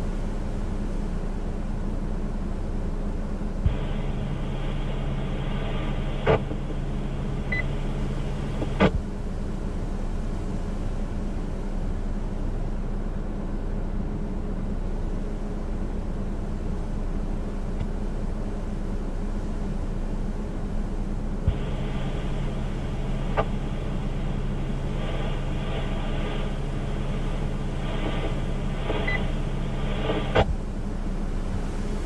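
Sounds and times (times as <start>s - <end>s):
low hum: 0.0s - 32.0s
radio channel click: 3.6s - 9.0s, 21.5s - 30.6s
radio static hiss: 3.6s - 11.0s, 21.4s - 32.0s
short radio beep: 7.4s - 7.7s, 28.3s - 29.3s.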